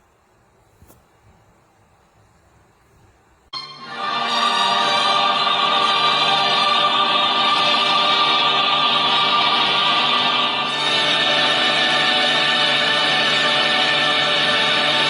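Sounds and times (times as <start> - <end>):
choral sustained chords music: 3.6 - 15.0.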